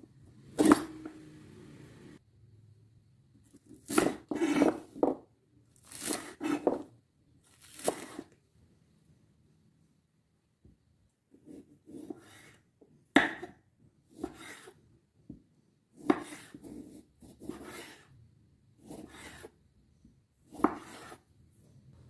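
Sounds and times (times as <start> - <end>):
knife strokes and scraping: 3.5 - 4.9, 5.8 - 6.8, 7.5 - 8.4, 11.5 - 12.6, 14.2 - 14.8, 16.0 - 18.1, 18.8 - 19.6, 20.5 - 21.3.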